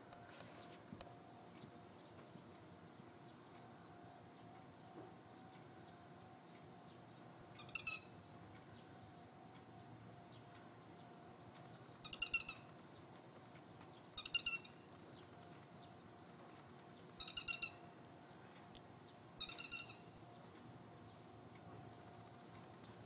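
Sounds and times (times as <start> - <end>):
lapwing calling: 7.6 - 8.2, 12.0 - 12.7, 14.2 - 14.9, 17.2 - 17.9, 19.4 - 20.2.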